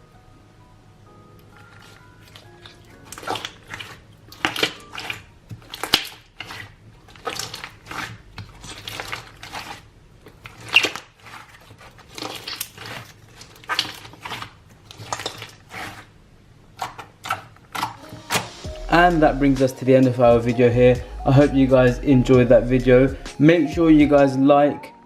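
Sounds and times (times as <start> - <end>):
hands squishing slime: 1.5 - 16.2, 16.8 - 19.0.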